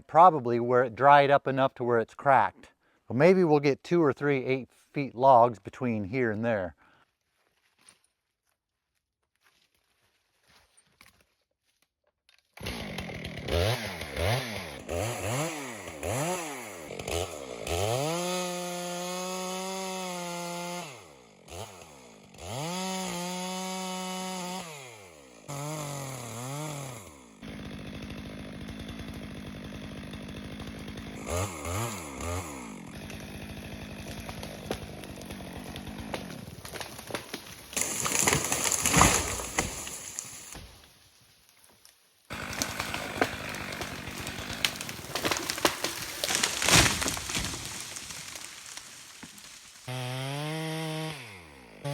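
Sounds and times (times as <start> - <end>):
chainsaw engine revving: 12.6 - 40.6, 42.3 - 51.9.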